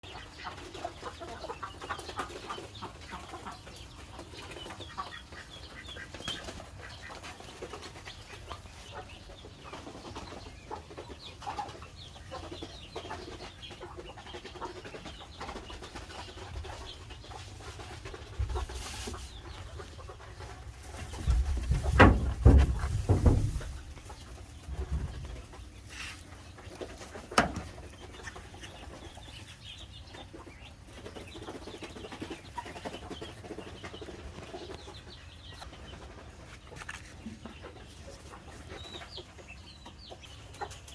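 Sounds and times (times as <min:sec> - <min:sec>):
chickens clucking: 0:00.0 - 0:40.9
low rumbling thumps: 0:20.9 - 0:25.6
sharp knock: 0:21.8 - 0:23.8.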